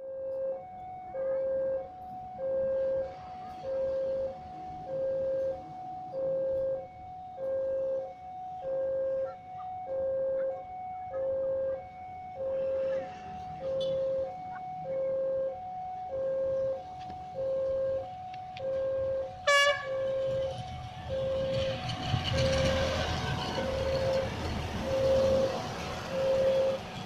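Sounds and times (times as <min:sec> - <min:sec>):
approaching train rumbling: 0:19.0 - 0:27.0.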